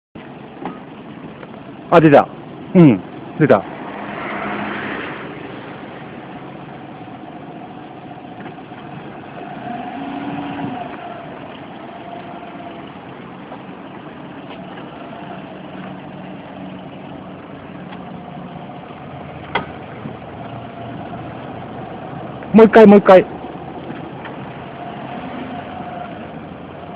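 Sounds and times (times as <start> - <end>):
car engine idling and pulling away: 0.2 - 26.9
rising tone over engine: 3.0 - 22.4.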